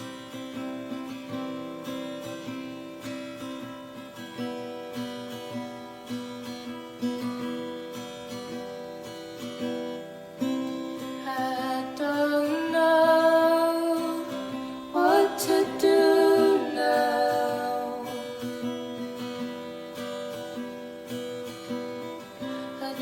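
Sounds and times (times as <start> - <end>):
acoustic guitar picking and strumming: 0.0 - 23.0
person singing: 11.1 - 18.7, 22.7 - 23.0.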